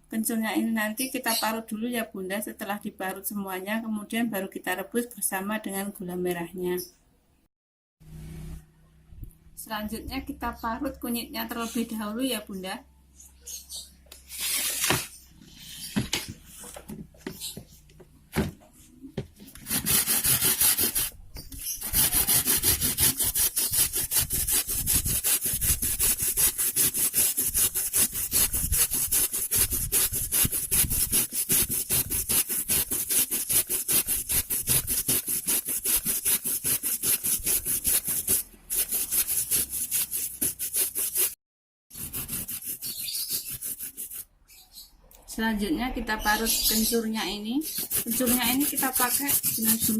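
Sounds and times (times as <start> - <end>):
root grated on a grater: 19.5 - 41.3, 47.6 - 49.9.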